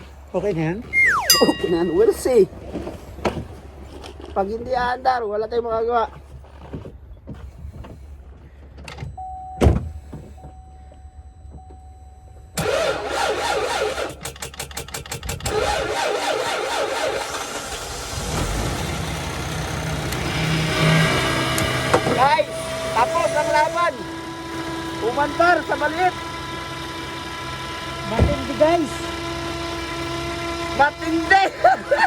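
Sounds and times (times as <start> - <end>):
steady electronic tone: 1.0 - 2.3
engine cranking and running: 12.5 - 32.0.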